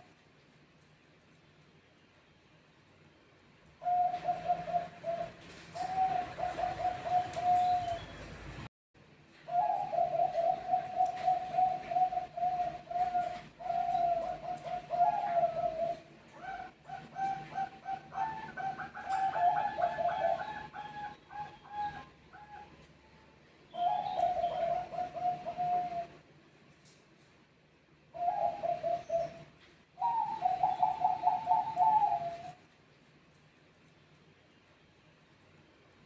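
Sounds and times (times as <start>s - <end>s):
doves cooing: 3.8s - 8.3s, 9.5s - 22.9s, 23.7s - 26.2s, 28.1s - 32.6s.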